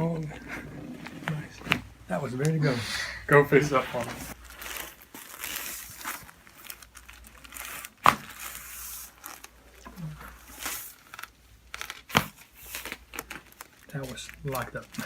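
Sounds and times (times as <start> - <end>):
table cover rustling: 3.4 - 15.0.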